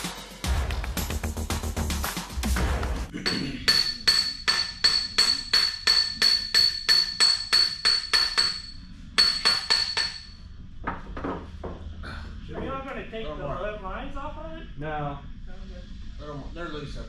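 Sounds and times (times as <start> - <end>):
music: 0.0 - 5.0
hammer striking steel pin: 3.2 - 10.4.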